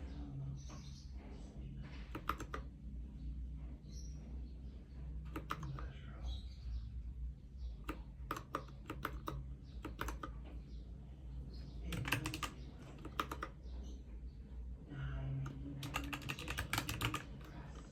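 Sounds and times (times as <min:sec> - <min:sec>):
mechanical keyboard typing: 0:02.1 - 0:02.7, 0:05.3 - 0:05.8, 0:07.8 - 0:10.4, 0:11.9 - 0:13.6, 0:15.4 - 0:17.9.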